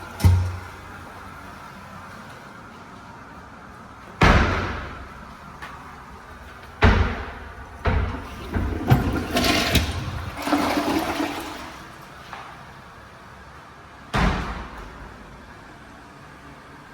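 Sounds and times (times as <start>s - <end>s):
toilet flushing: 0.0s - 1.6s, 6.9s - 12.7s.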